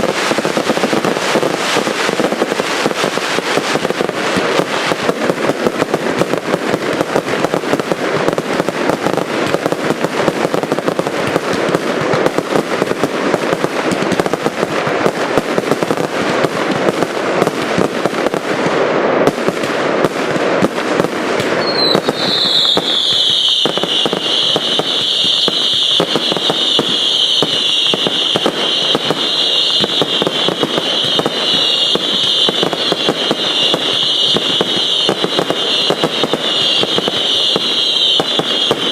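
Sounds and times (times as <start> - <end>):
fireworks bangs and crackling: 0.0 - 38.9
high-pitched firework whistle: 21.4 - 38.9.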